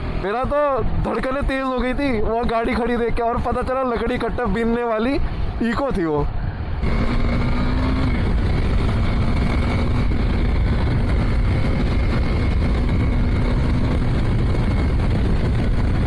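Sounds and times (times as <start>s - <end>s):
motorcycle engine drone: 0.0s - 2.8s, 6.3s - 16.0s
wind noise: 0.0s - 16.0s.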